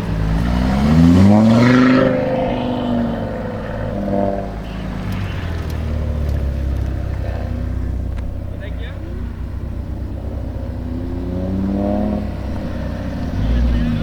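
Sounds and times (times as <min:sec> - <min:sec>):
car engine accelerating hard: 0:00.0 - 0:14.0.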